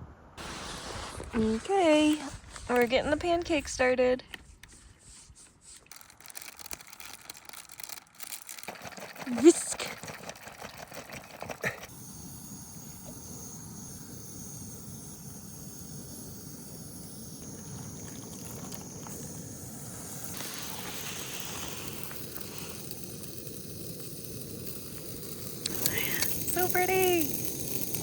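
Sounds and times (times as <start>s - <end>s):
camp stove burner hissing: 0.4s - 3.8s, 4.4s - 28.0s
batter sizzling in a pan: 11.6s - 28.0s.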